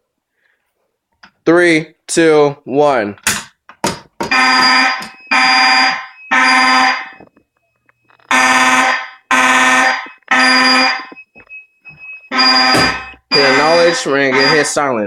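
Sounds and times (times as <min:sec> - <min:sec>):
fire alarm horn blasts: 0:04.3 - 0:07.3, 0:08.3 - 0:15.0.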